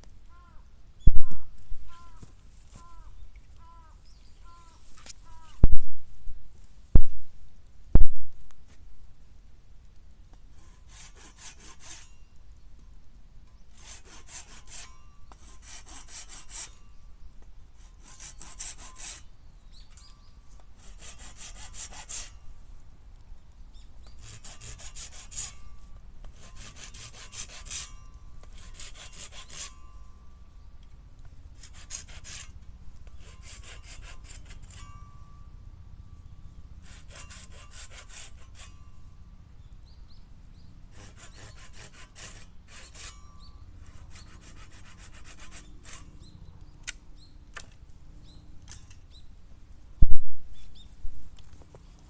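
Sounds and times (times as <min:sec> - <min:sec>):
hand saw cutting bamboo: 0:10.5 - 0:12.2, 0:13.7 - 0:16.9, 0:17.8 - 0:19.3, 0:20.8 - 0:22.4, 0:24.1 - 0:30.0, 0:31.6 - 0:35.0, 0:36.8 - 0:38.9, 0:40.9 - 0:47.0.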